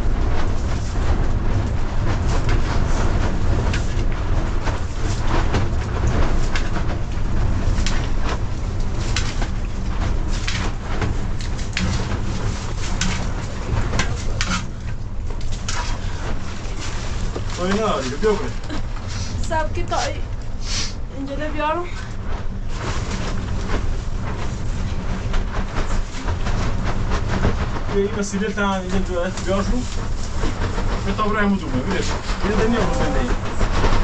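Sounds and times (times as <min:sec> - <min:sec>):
steady rush of noise: 0:00.0 - 0:34.0
wind rumbling on microphone: 0:00.0 - 0:34.0.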